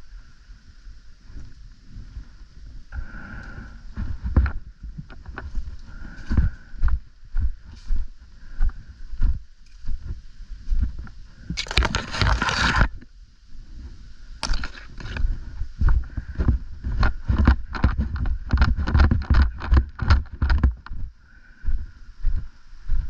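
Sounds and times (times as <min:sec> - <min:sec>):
knocks and rustles: 0:15.9 - 0:21.0.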